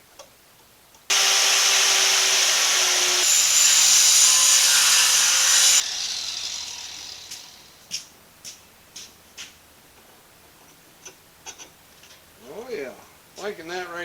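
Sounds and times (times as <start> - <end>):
power tool cutting metal: 1.1 - 7.8.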